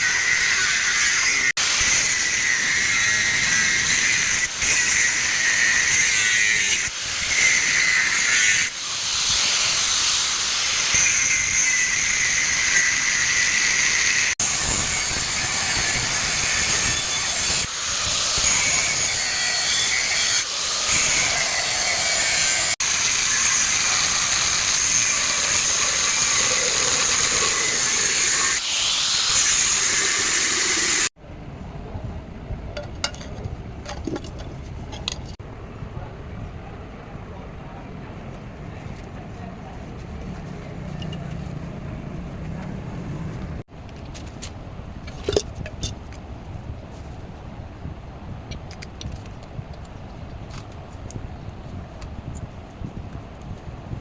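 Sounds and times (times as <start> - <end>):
gas hissing from a nozzle: 23.4 - 31.1.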